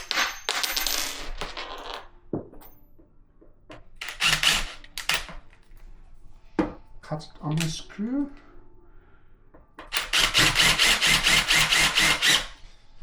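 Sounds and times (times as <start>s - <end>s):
cordless drill driving screws: 4.0s - 5.3s, 9.9s - 12.6s.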